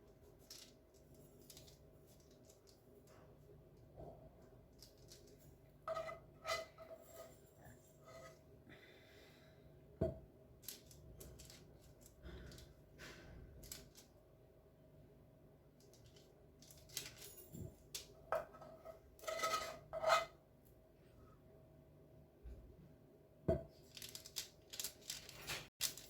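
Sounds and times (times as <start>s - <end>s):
kitchen utensils clicking and scraping: 16.7s - 20.3s.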